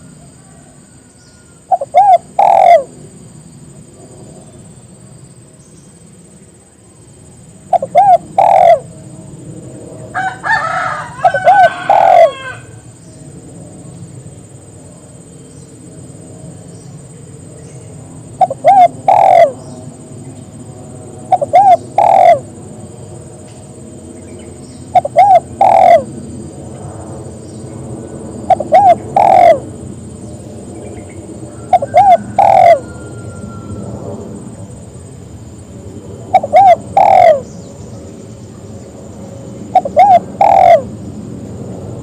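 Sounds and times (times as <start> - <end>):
dove cooing: 0.0 - 3.0, 7.7 - 9.0, 10.3 - 12.8, 18.2 - 19.7, 21.2 - 22.6, 24.9 - 26.2, 28.3 - 30.0, 31.5 - 33.8, 36.2 - 37.5, 39.7 - 40.9
harsh bird call: 1.6 - 2.9, 7.7 - 8.9, 10.2 - 12.9, 18.4 - 19.7, 21.3 - 22.5, 24.8 - 26.1, 28.4 - 29.7, 31.5 - 33.8, 36.3 - 37.5, 39.7 - 40.9.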